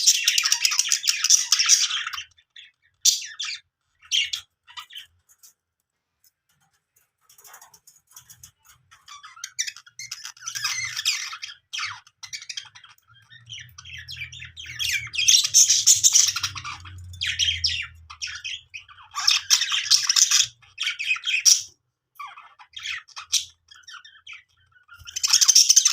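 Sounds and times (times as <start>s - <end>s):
budgies chirping and chattering: 0.0s - 5.6s, 6.2s - 25.9s.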